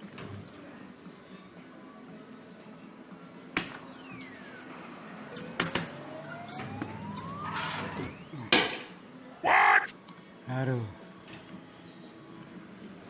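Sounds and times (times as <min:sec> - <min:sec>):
rising electronic tone: 0:06.0 - 0:08.3, 0:09.4 - 0:09.9
falling electronic tone: 0:06.0 - 0:08.4, 0:09.4 - 0:09.9.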